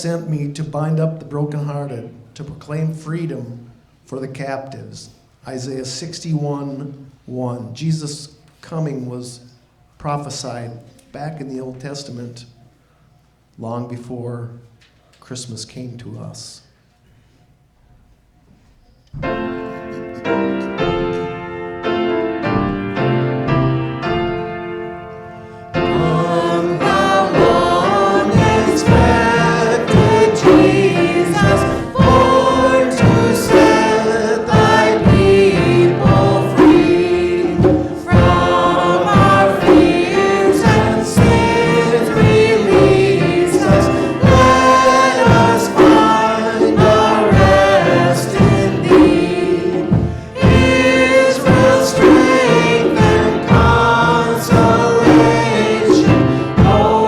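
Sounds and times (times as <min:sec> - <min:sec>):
gospel choir music with beat: 0:19.1 - 0:57.0.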